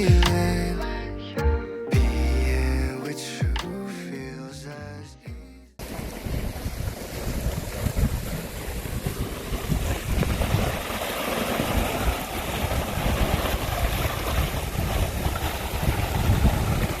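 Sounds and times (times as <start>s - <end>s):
sea water rushing: 5.8s - 17.0s
wind gusting on microphone: 5.8s - 17.0s.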